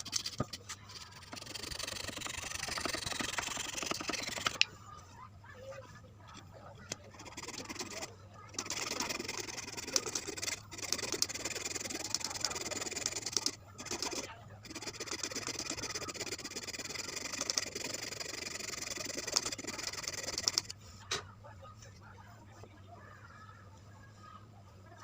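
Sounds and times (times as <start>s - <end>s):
hand tool rasping wood: 0.0s - 4.7s, 6.9s - 20.7s.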